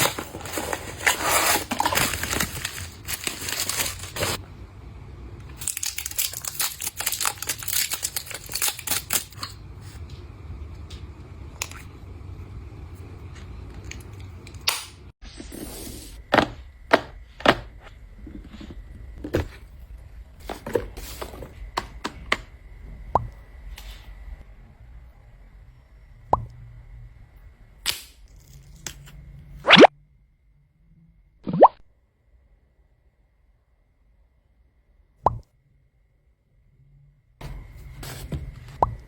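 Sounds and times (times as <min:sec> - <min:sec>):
packaging crinkling: 0:00.0 - 0:04.4, 0:05.6 - 0:09.4.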